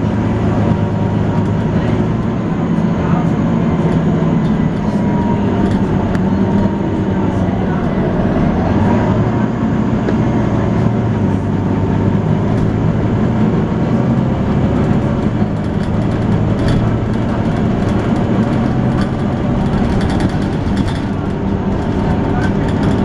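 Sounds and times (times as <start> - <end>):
bus engine humming: 0.0 - 23.0
light clicks and rattles: 14.8 - 23.0.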